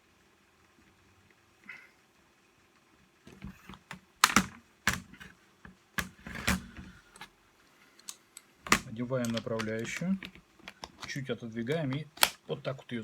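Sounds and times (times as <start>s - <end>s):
plastic and metal parts clicking: 3.3s - 7.3s, 8.0s - 12.5s.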